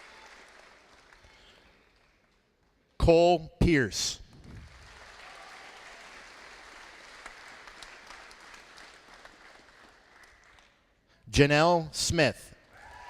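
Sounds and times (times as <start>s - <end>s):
audience applauding: 0.0s - 2.5s, 4.6s - 10.8s.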